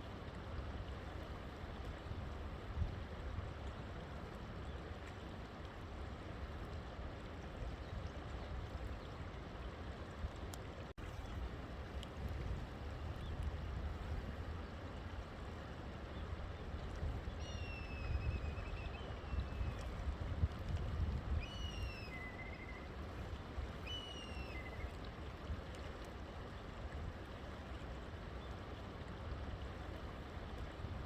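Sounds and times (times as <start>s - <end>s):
river water running: 0.0s - 31.0s
bird whistling call: 17.4s - 19.6s, 21.4s - 22.9s, 23.8s - 24.8s.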